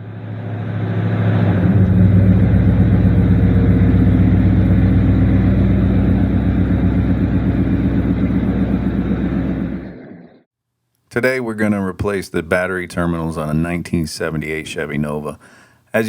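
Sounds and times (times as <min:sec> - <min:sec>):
car engine idling: 0:00.0 - 0:10.2.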